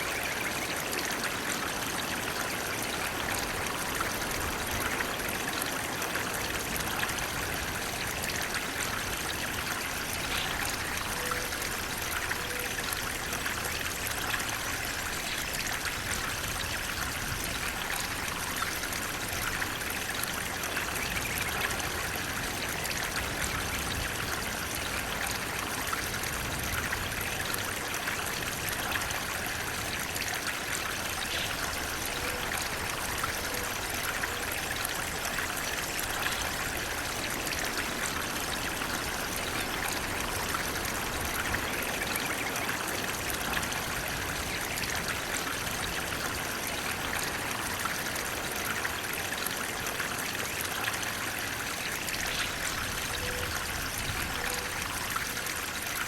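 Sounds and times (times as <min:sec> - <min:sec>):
water flowing steadily: 0:00.0 - 0:56.0.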